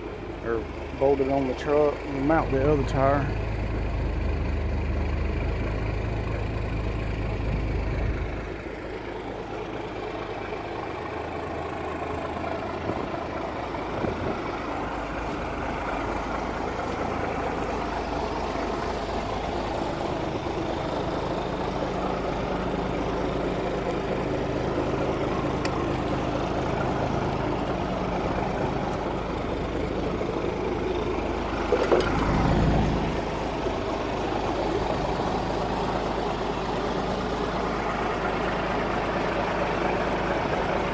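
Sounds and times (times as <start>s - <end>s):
engine idling: 0.0s - 40.9s.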